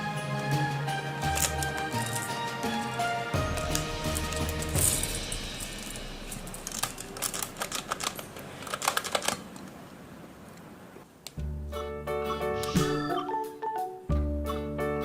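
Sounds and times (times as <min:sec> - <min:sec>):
clicking and rustling handling: 0:01.3 - 0:05.1, 0:06.3 - 0:11.4.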